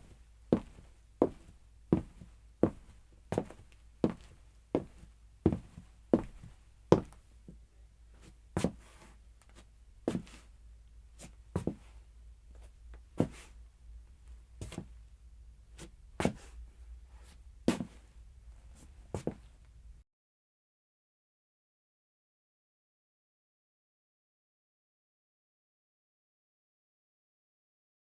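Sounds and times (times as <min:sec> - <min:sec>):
footsteps of hard-soled shoes: 0:00.0 - 0:07.6, 0:09.5 - 0:10.4, 0:11.2 - 0:11.9, 0:14.6 - 0:14.9, 0:18.8 - 0:19.5.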